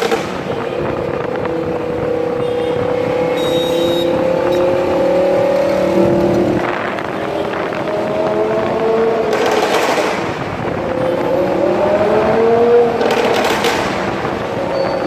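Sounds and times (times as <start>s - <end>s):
exhaust crackles and pops: 0.0s - 2.1s, 7.6s - 10.9s, 12.2s - 15.0s
sports car engine accelerating: 1.2s - 6.8s, 7.5s - 15.0s.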